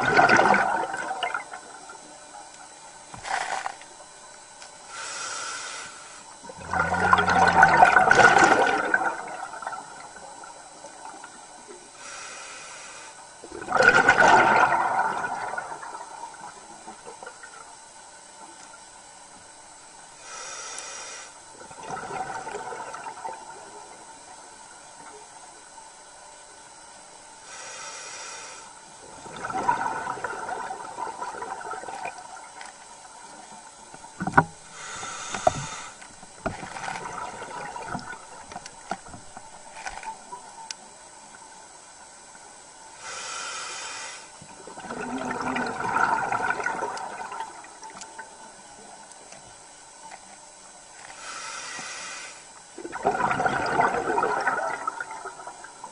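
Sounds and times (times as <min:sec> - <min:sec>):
regulator inhale hiss: 0:04.9 - 0:06.4, 0:12.0 - 0:13.2, 0:20.1 - 0:21.5, 0:27.4 - 0:28.8, 0:34.6 - 0:36.2, 0:43.0 - 0:44.4, 0:51.0 - 0:52.6
bubbling exhale: 0:34.6 - 0:36.0, 0:43.0 - 0:47.5, 0:51.1 - 0:55.9.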